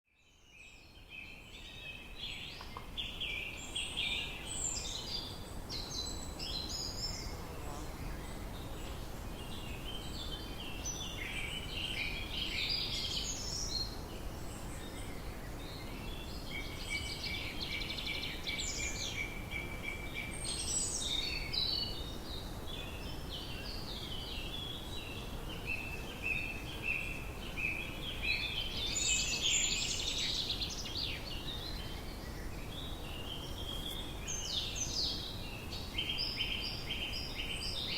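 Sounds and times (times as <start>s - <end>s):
birds chirping chorus: 0.2s - 37.9s.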